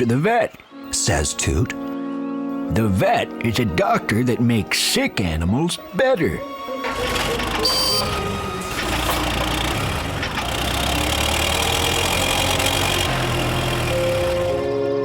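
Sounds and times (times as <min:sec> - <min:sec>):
cartoon car engine: 0:06.6 - 0:15.0.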